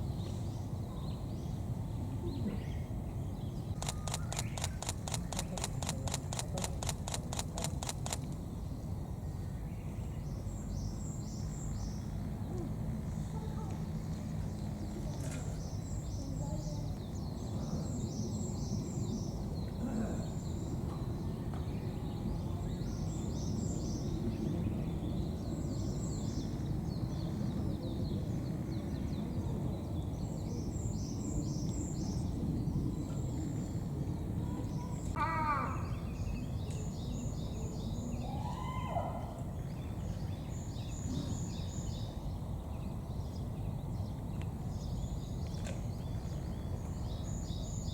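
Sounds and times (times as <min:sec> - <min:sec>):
small birds chirping: 0:00.0 - 0:38.4
outdoor background noise: 0:00.0 - 0:47.9.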